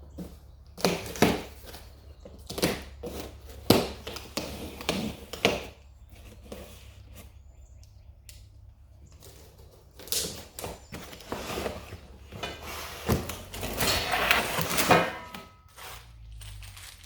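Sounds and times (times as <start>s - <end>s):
parts clattering: 8.5s - 17.0s
packaging rustling: 15.7s - 17.0s.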